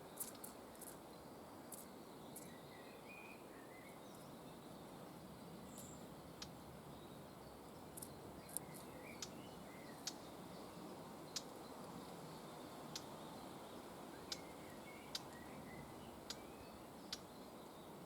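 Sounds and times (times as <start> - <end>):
bird chirps: 8.0 - 11.5, 12.4 - 18.0.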